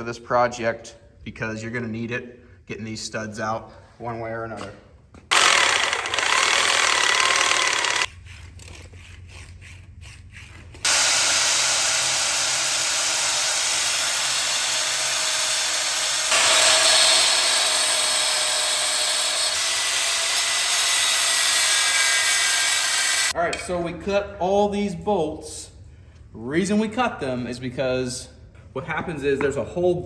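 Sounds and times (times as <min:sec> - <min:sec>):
reciprocating saw cutting metal: 0:05.3 - 0:08.1, 0:10.8 - 0:23.3.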